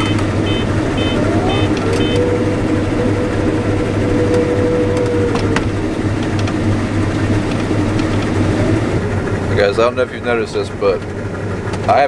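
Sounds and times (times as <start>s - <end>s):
machine whine: 0.0s - 9.4s
combine harvester drone: 0.0s - 12.0s.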